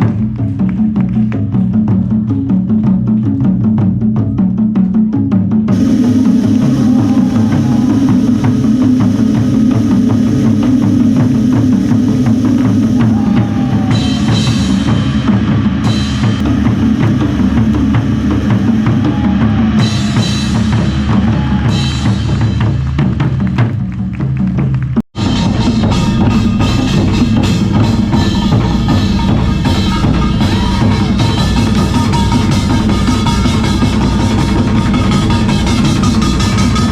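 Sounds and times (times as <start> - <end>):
ensemble drumming: 5.6 - 36.9
brighter higher drum layer: 5.7 - 22.7.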